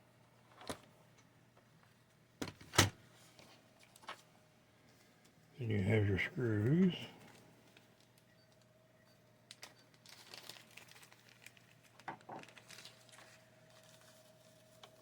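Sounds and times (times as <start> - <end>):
faint steady hum: 0.0 - 15.0
small parts clicking and rustling: 9.5 - 15.0.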